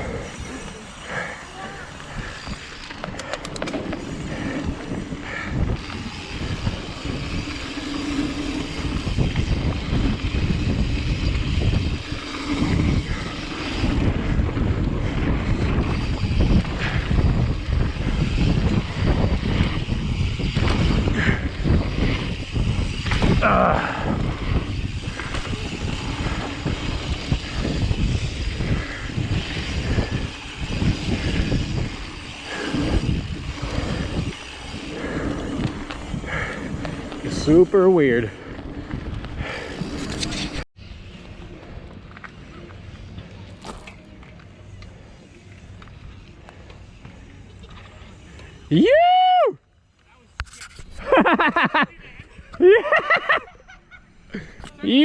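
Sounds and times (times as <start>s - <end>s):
wind buffeting microphone: 0.0s - 40.7s
bike tyres rolling on dirt: 0.0s - 51.8s
bike rattling: 0.0s - 55.0s.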